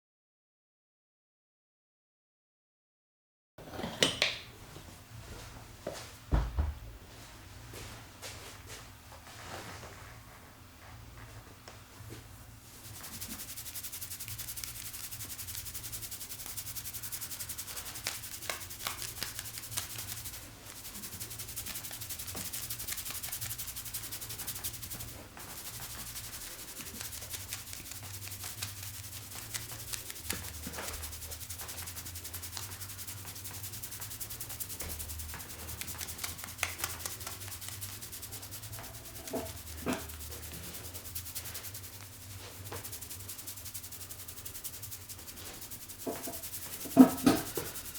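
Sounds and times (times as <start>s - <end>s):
fingers rubbing hair and scalp: 12.7s - 47.9s.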